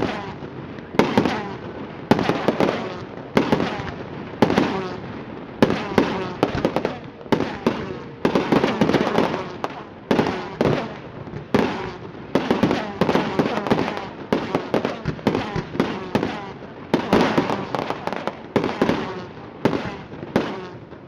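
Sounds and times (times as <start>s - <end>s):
fireworks crackling: 0.0s - 21.0s
firework shell bursts: 5.6s - 20.9s.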